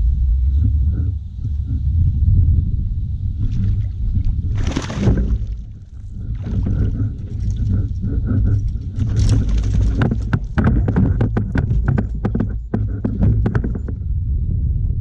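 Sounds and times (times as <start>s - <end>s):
low rumble: 0.0s - 15.0s
knocks and clatter on kayak: 3.4s - 14.1s.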